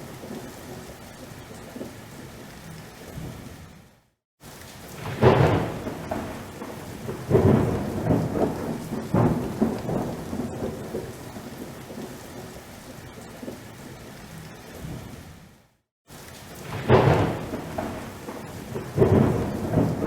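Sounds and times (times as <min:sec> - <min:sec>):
steady rain: 0:00.0 - 0:20.0
thunder rolling: 0:04.9 - 0:12.6, 0:16.6 - 0:20.0.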